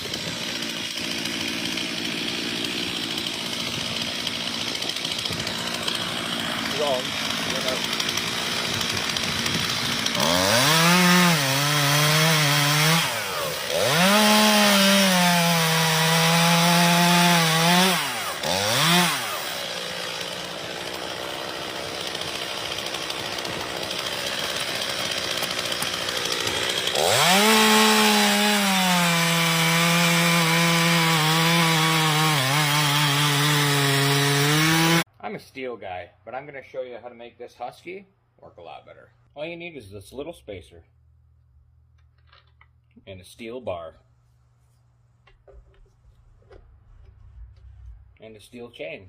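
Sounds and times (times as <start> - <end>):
chainsaw revving: 0.0 - 35.1.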